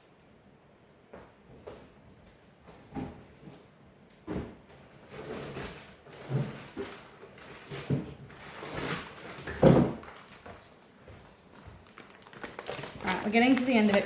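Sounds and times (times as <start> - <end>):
packages thumping: 4.2 - 10.7, 11.5 - 14.0
packaging rustling: 5.1 - 14.0.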